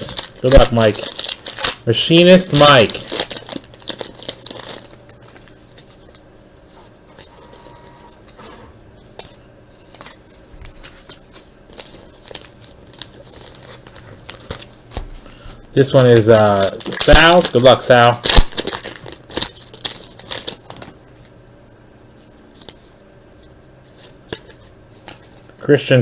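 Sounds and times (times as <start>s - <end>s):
wrapper tearing and crinkling: 0.0s - 6.2s, 9.8s - 14.8s, 15.8s - 21.0s
cards rustling and clicking: 0.0s - 15.1s, 15.8s - 20.9s, 23.8s - 25.4s.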